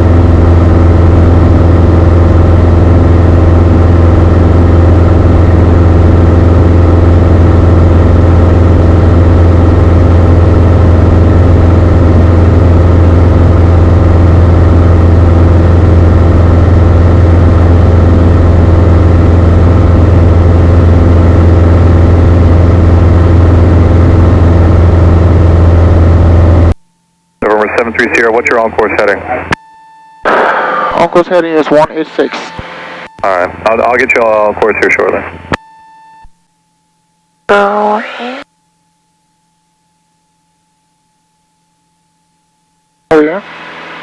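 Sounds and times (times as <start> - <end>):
aircraft engine and propeller droning: 0.0 - 26.7, 43.2 - 44.0.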